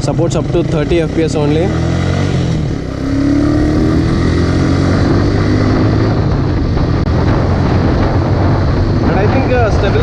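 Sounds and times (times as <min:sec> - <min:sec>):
motorcycle engine revving: 0:00.0 - 0:10.0
wind noise on microphone: 0:02.2 - 0:10.0.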